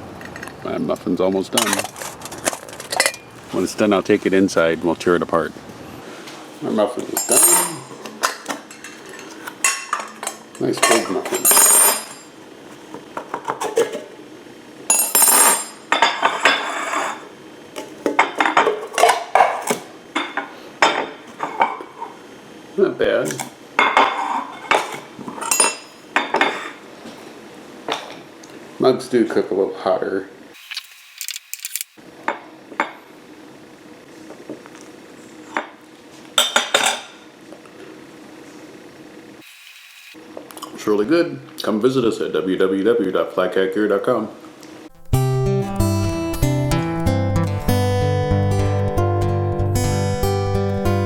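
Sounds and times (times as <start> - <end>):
cutlery clinking on dishes: 7.2 - 12.3, 14.9 - 16.8, 23.3 - 26.8.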